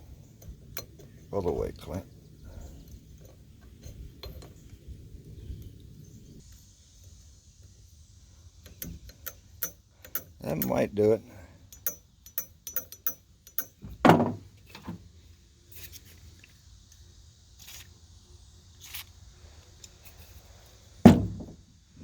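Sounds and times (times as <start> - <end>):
light clicks of tools handled: 11.7 - 13.9
dull knock: 14.0 - 14.4, 21.1 - 21.6.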